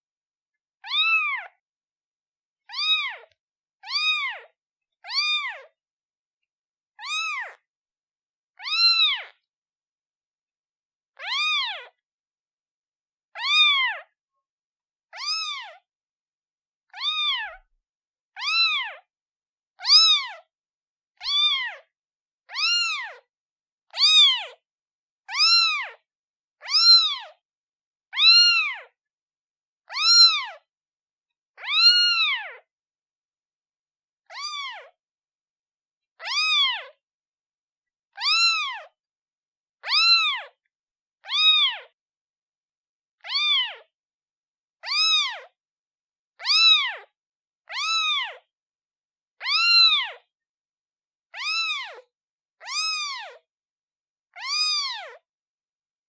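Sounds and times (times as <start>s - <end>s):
kitten meowing: 0.8s - 1.6s, 2.7s - 5.8s, 7.0s - 7.6s, 8.6s - 9.5s, 11.2s - 12.0s, 13.4s - 14.1s, 15.1s - 15.8s, 16.9s - 17.7s, 18.3s - 19.1s, 19.8s - 20.5s, 21.2s - 21.9s, 22.5s - 23.3s, 23.9s - 24.6s, 25.3s - 26.0s, 26.6s - 27.4s, 28.1s - 29.0s, 29.9s - 30.7s, 31.6s - 32.7s, 34.2s - 35.0s, 36.2s - 37.0s, 38.1s - 39.0s, 39.8s - 40.6s, 41.2s - 42.0s, 43.2s - 43.9s, 44.8s - 45.6s, 46.4s - 47.1s, 47.7s - 48.5s, 49.4s - 50.3s, 51.4s - 53.4s, 54.3s - 55.2s.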